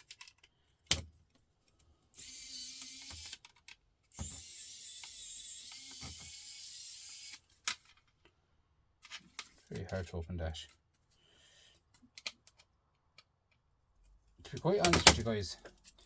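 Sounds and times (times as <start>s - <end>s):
electric screwdriver running: 2.2s - 3.4s, 4.2s - 7.4s.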